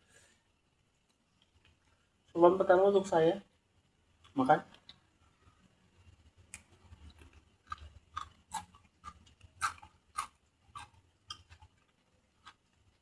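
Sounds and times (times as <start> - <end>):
chewing crunchy raw vegetables: 6.5 - 13.0.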